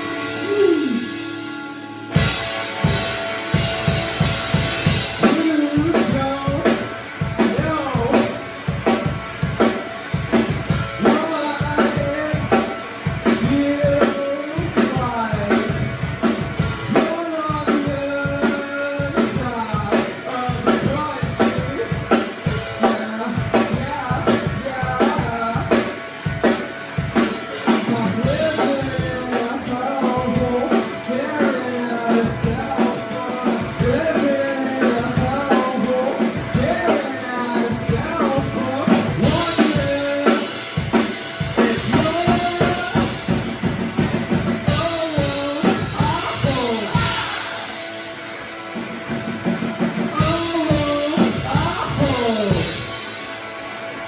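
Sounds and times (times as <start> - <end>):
person singing: 0.0 - 2.5, 4.8 - 8.4, 11.0 - 15.9, 16.7 - 26.0, 27.5 - 43.5, 44.5 - 47.9, 50.0 - 53.2
drum kit beat: 0.0 - 54.0
guitar: 0.0 - 54.0.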